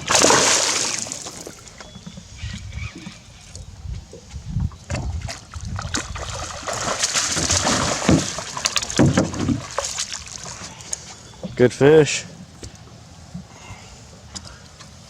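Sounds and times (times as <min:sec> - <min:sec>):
water splashing and sloshing: 0:00.0 - 0:11.6
knocks: 0:09.0 - 0:09.6.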